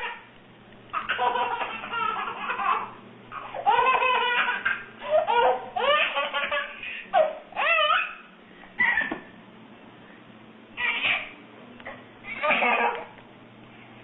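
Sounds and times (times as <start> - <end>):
baby laughing: 0.9 - 9.3, 10.8 - 13.2.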